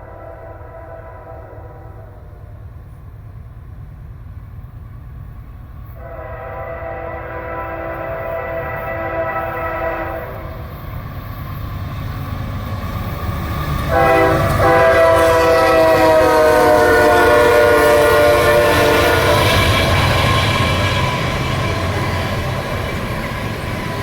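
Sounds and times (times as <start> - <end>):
locomotive air horn blast: 0.0 - 2.4, 6.0 - 10.7, 13.9 - 21.2
low rumble of passing train: 0.0 - 24.0.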